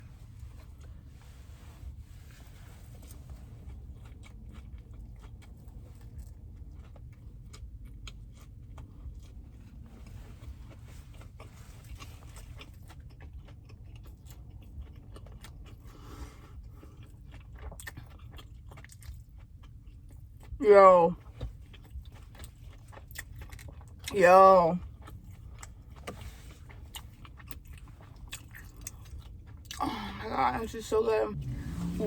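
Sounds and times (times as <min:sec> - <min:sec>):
low steady rumble: 0:00.0 - 0:32.0
person crunching food: 0:02.9 - 0:20.3, 0:21.6 - 0:24.1, 0:24.8 - 0:29.9.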